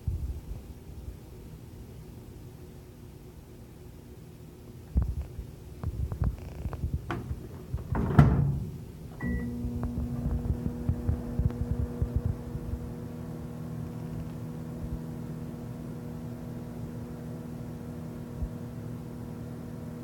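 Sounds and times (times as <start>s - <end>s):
microwave oven humming: 5.8s - 20.0s.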